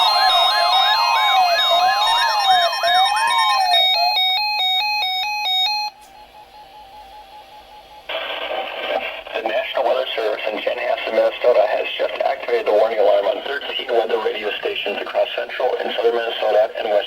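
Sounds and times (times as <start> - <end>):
siren-like sweeps: 0.0 - 5.9
alternating two-pitch beeps: 0.0 - 8.0
steady high warning tone: 0.0 - 8.2
voice on the radio: 8.1 - 17.0.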